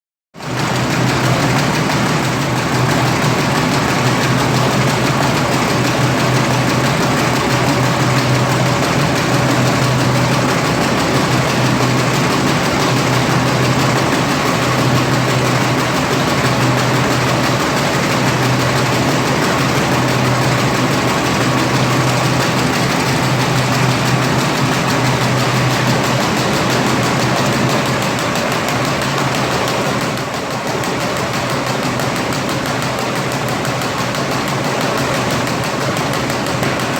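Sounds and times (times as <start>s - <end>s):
paper bag machine running: 0.4s - 36.9s.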